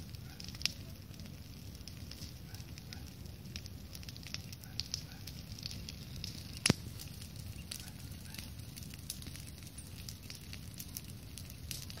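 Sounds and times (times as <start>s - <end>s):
campfire crackling: 0.0s - 12.0s.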